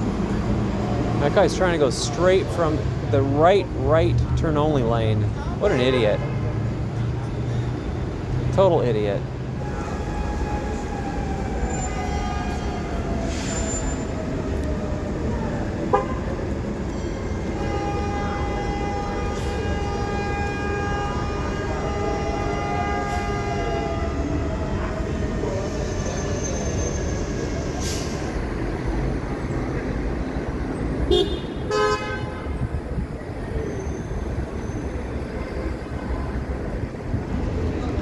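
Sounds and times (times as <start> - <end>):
city traffic rumble: 0.0 - 38.0
car horn blasting: 17.6 - 24.0, 31.1 - 32.6.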